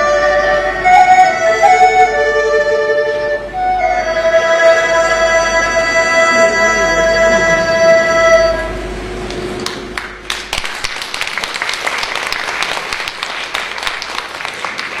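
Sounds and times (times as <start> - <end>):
held musical note: 0.0 - 9.2
audience applause: 9.6 - 15.0.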